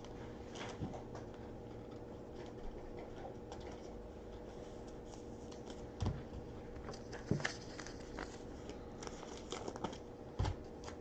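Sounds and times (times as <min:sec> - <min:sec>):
wrapper crinkling: 0:06.9 - 0:10.1.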